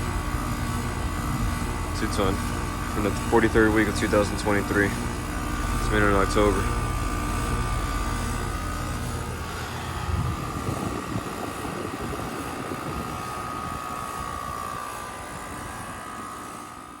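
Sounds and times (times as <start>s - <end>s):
heat pump fan whir: 0.0s - 17.0s
high whine: 0.0s - 17.0s
low rumble: 6.5s - 13.6s.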